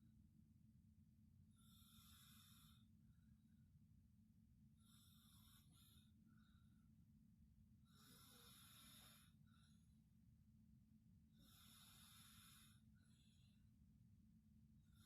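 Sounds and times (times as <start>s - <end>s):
person snoring faintly: 7.9s - 9.4s, 11.4s - 12.8s.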